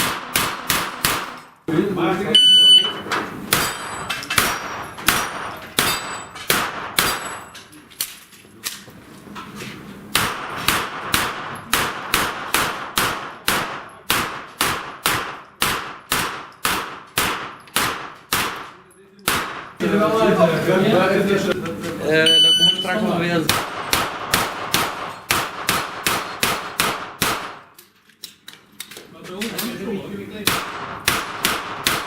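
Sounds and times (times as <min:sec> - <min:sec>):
gunshots: 0:00.0 - 0:01.5, 0:03.5 - 0:07.4, 0:10.1 - 0:19.8, 0:23.5 - 0:27.7, 0:30.4 - 0:32.0
metallic clangs of target hits: 0:03.5 - 0:07.7.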